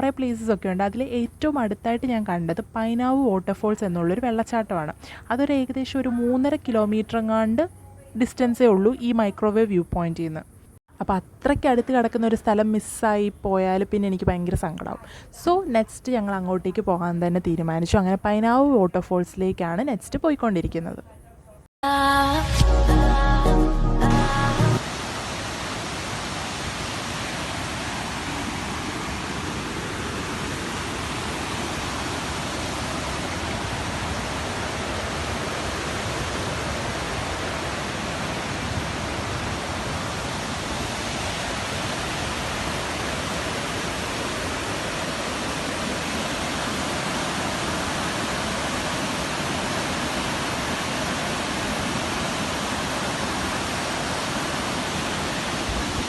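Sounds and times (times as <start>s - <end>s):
waterfall rushing: 24.8s - 56.0s.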